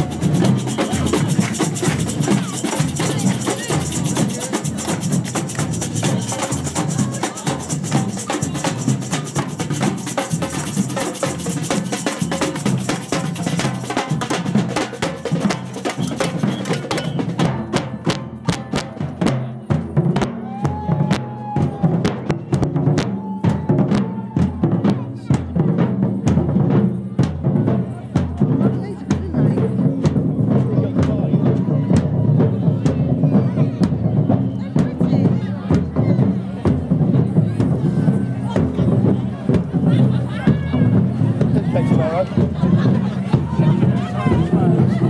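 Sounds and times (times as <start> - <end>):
drum band marching rhythm: 0.0 - 45.0.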